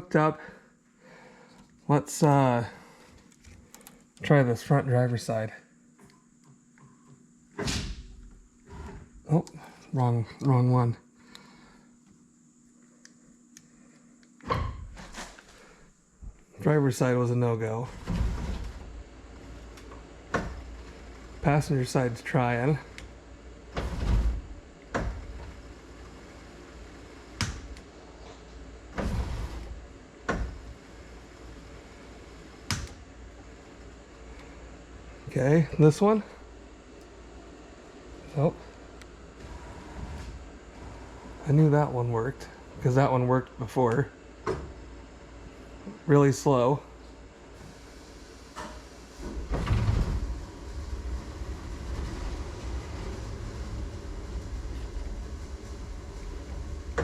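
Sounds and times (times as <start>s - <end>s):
power window motor rumble: 47.6s - 57.0s.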